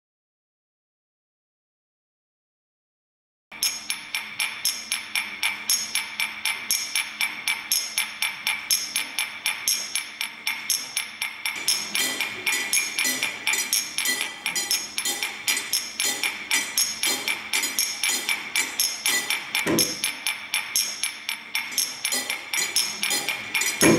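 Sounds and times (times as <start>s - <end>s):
ringing percussion clinks: 3.6s - 9.1s, 10.7s - 23.9s.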